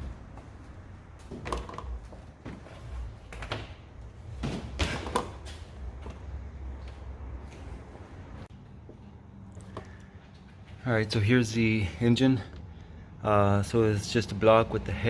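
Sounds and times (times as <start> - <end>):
knocks of tools and parts: 1.3 - 2.6.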